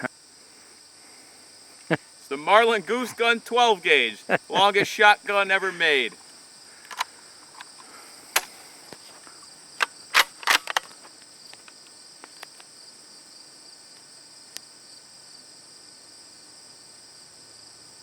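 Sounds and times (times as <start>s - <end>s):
crickets chirring: 0.0s - 18.0s
sharp clicks: 6.8s - 8.6s, 9.8s - 11.8s.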